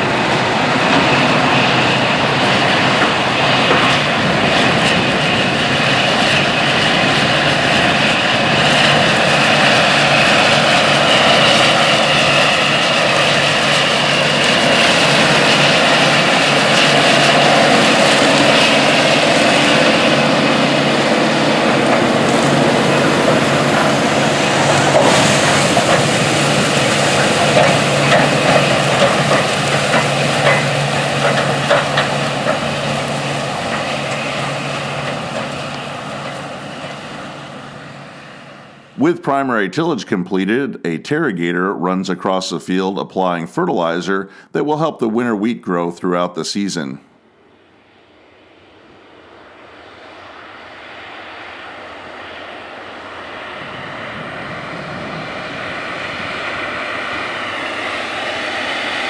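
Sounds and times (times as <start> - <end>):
disc harrow noise: 0.0 - 39.1
tractor diesel engine running: 0.0 - 46.9
knocks and rattles: 24.7 - 32.7.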